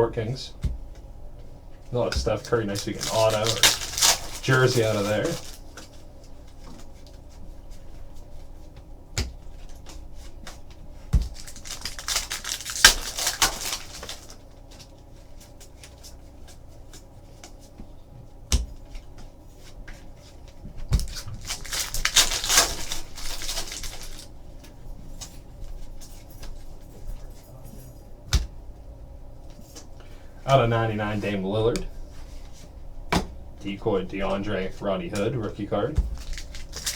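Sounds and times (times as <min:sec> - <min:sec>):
wrappers tearing and crinkling: 0:02.0 - 0:06.0, 0:11.2 - 0:15.0, 0:21.0 - 0:24.3, 0:35.6 - 0:36.9.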